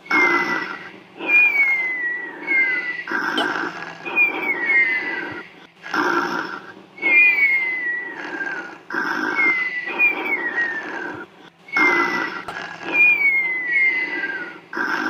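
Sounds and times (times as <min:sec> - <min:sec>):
person snoring with nasal whistle: 0:00.0 - 0:05.4, 0:07.0 - 0:15.0.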